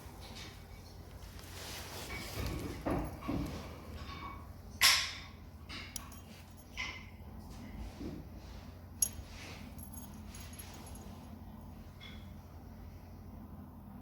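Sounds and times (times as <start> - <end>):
metal tools clinking: 3.0 - 7.0, 9.0 - 11.3.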